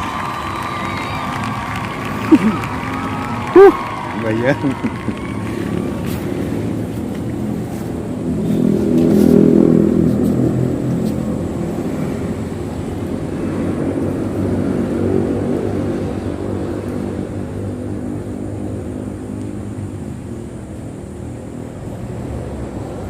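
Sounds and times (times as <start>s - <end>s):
motor engine humming: 0.0s - 23.0s.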